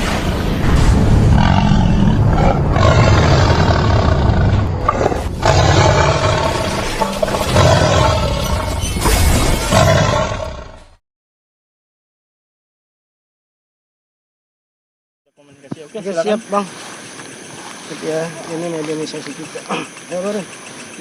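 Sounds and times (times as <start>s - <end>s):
roaring growling sound effects: 0.6s - 11.0s.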